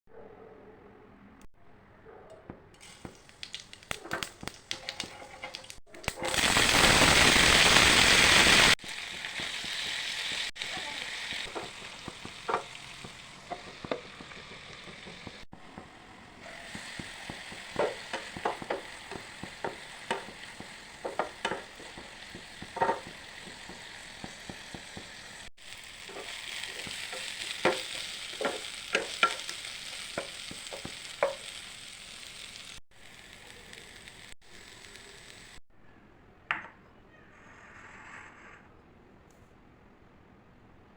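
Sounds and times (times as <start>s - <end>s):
beans sizzling in a pan: 2.8s - 35.6s
spatula scraping a pan: 16.6s - 24.6s.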